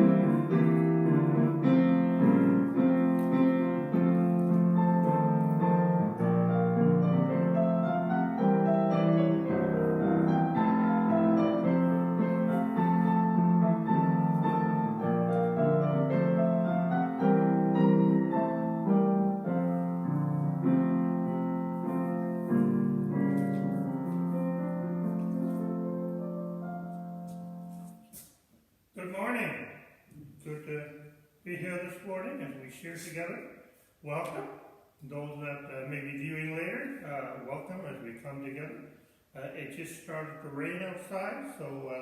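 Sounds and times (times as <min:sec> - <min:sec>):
solo piano playing slow chords: 0:00.0 - 0:28.0.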